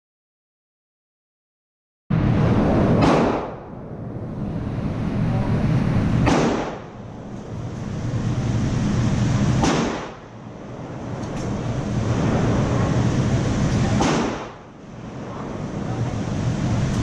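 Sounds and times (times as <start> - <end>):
gunshots: 2.9 - 3.7, 6.2 - 7.1, 9.5 - 10.4, 13.9 - 14.7.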